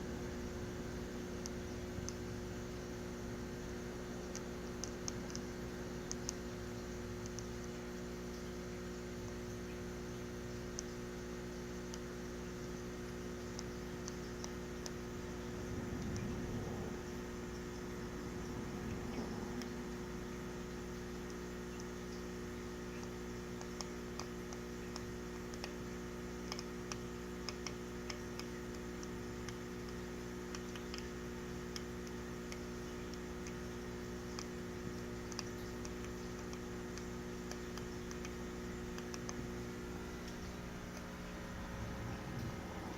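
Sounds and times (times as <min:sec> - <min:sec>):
steady hum: 0:00.0 - 0:42.9
fish clicking: 0:13.4 - 0:42.9.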